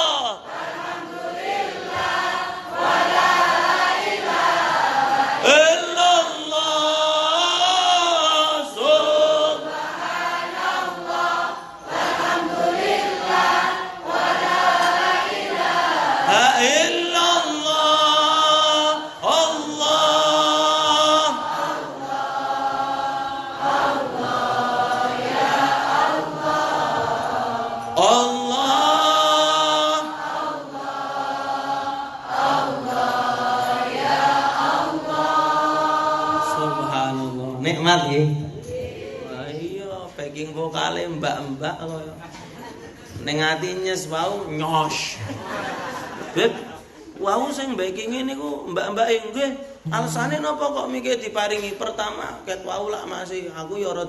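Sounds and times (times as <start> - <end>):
group singing a chant: 0.0 - 39.6, 45.0 - 46.8.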